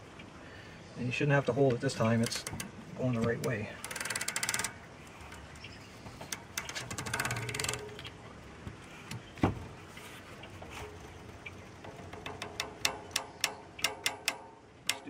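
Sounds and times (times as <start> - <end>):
torque wrench ratcheting clicks: 2.2 - 2.7, 3.4 - 5.4, 6.3 - 8.0, 11.9 - 15.0.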